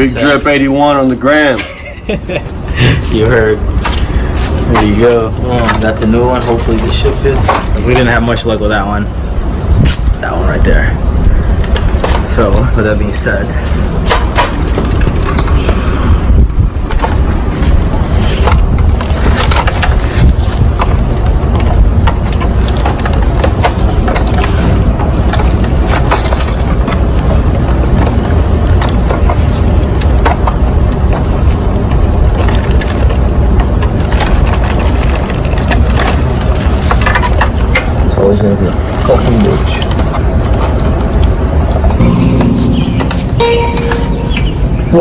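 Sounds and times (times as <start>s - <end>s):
loud low rumble: 41.6s - 45.0s.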